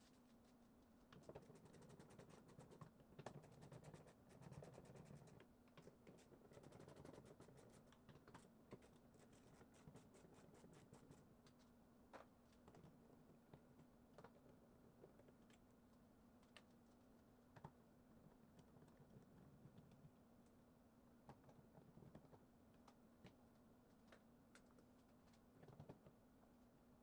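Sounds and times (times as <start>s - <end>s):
faint irregular clicks and taps: 11.4s - 20.6s, 21.2s - 26.2s.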